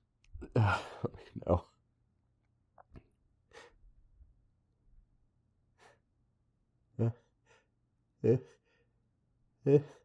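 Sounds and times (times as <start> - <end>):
man breathing: 3.5 - 3.8.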